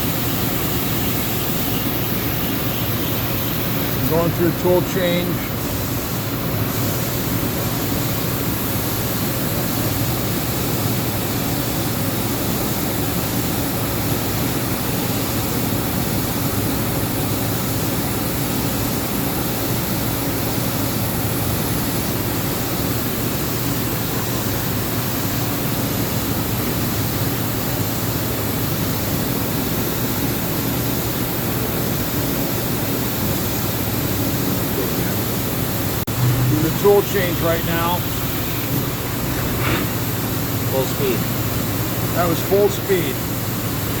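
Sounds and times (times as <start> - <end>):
machining center whirring drone: 0.0 - 17.2, 31.2 - 44.0
faint high whine: 36.0 - 39.0.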